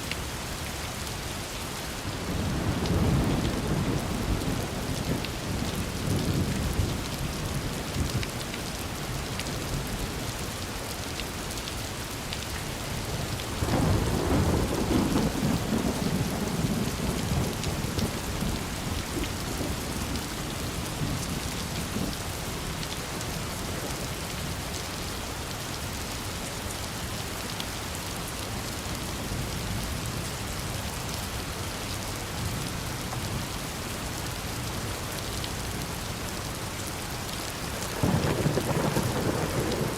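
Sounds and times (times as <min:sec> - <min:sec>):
steady rain falling: 0:00.0 - 0:39.9
thunder rumbling: 0:13.6 - 0:21.3, 0:37.8 - 0:39.9.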